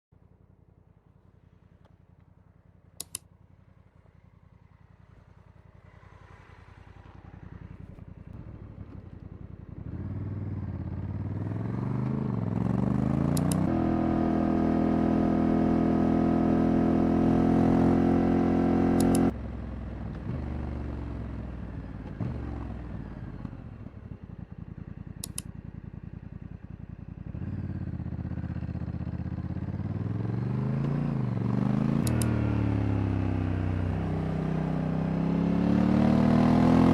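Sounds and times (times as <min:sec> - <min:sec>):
faint sharp clicks: 0:03.0 - 0:03.2, 0:13.4 - 0:13.7, 0:19.0 - 0:19.3, 0:25.2 - 0:25.5, 0:32.0 - 0:32.3
motorcycle engine running: 0:07.2 - 0:36.9.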